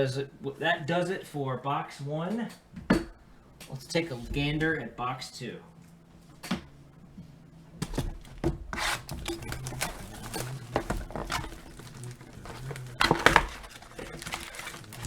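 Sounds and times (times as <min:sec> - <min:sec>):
cardboard and plastic wrap rubbing: 0:07.9 - 0:15.0.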